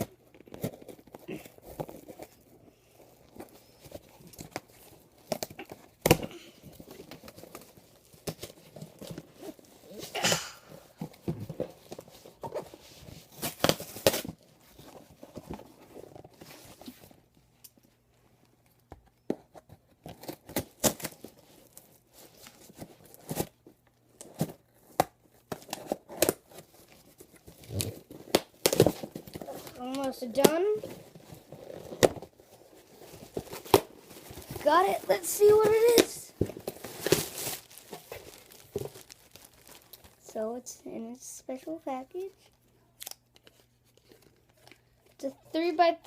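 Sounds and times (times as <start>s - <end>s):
packaging tearing and crinkling: 20.0s - 23.6s, 24.2s - 40.2s.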